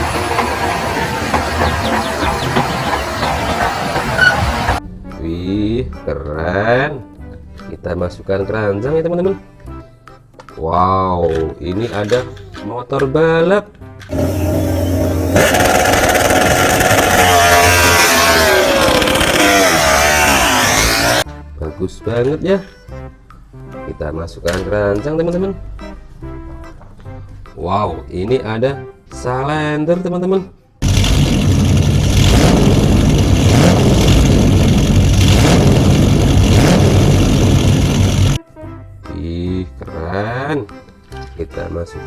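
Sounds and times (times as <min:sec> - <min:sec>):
motorcycle engine revving: 0:00.0 - 0:04.8, 0:14.1 - 0:21.3, 0:30.8 - 0:38.4.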